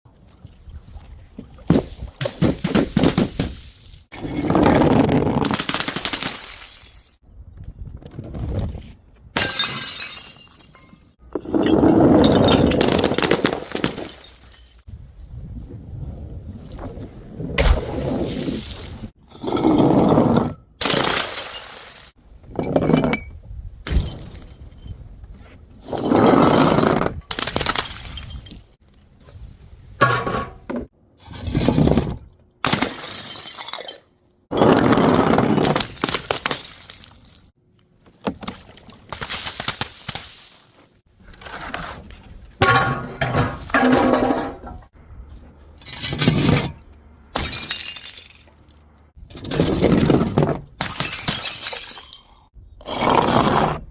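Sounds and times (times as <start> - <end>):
glass bottles smashing: 6.1 - 7.2, 9.4 - 14.9, 20.8 - 23.1, 32.7 - 34.0, 35.6 - 37.5, 47.4 - 48.8, 50.8 - 52.5.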